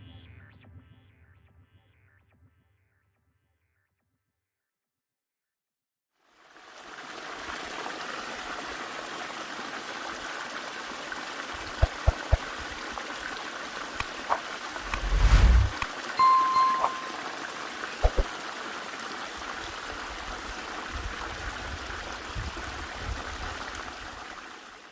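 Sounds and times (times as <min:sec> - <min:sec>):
stream water rushing: 0:06.6 - 0:24.9
low rumble: 0:14.8 - 0:15.8
steady high tone: 0:15.2 - 0:17.4.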